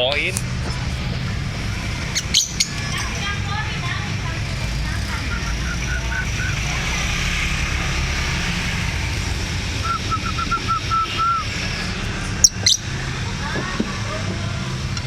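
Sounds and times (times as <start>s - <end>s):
steady low rumble: 0.0s - 15.0s
bird chirping: 2.1s - 3.2s, 5.0s - 7.6s, 12.4s - 13.0s.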